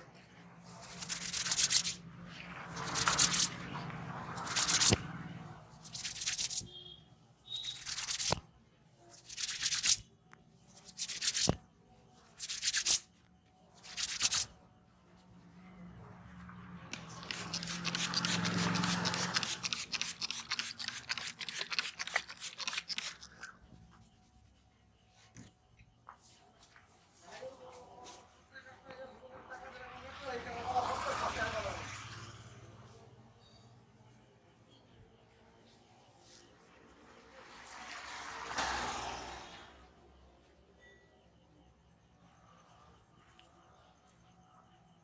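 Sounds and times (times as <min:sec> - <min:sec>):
hands rubbing skin and hair: 0:00.7 - 0:02.0, 0:02.6 - 0:03.6, 0:04.3 - 0:05.0, 0:05.8 - 0:06.7, 0:07.6 - 0:08.4, 0:09.2 - 0:10.0, 0:10.7 - 0:11.6, 0:12.4 - 0:13.1, 0:13.8 - 0:14.5, 0:17.0 - 0:24.2.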